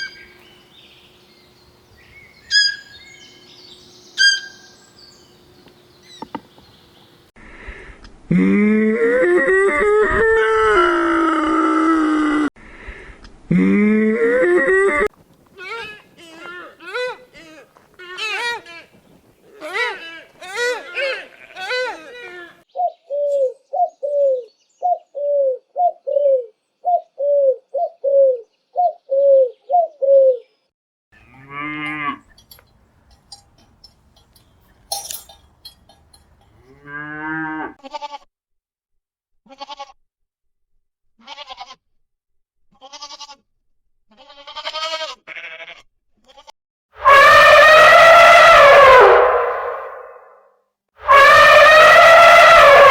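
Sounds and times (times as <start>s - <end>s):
bleating or lowing calls: 2.5s - 3.1s, 4.2s - 4.8s, 15.6s - 22.6s, 47.0s - 50.4s, 51.0s - 52.9s
short pitched animal calls: 4.2s - 4.7s, 47.0s - 50.4s
loud long animal call: 47.0s - 50.4s, 51.0s - 52.9s.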